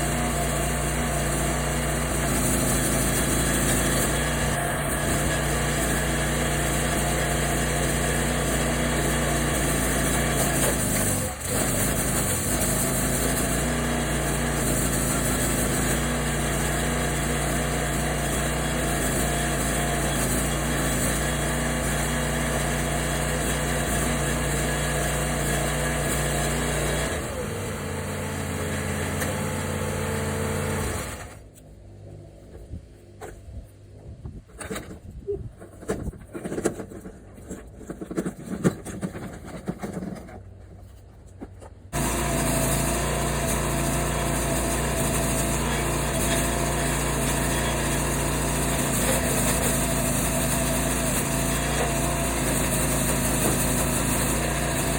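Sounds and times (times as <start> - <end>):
small engine running: 0.0 - 31.5, 41.9 - 54.9.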